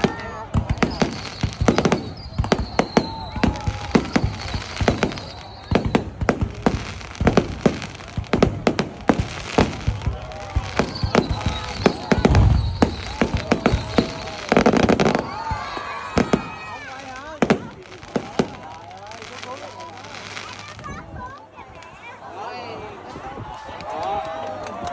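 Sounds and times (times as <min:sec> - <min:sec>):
deep firework boom: 0:00.0 - 0:16.7
fireworks bangs and pops: 0:00.0 - 0:22.2.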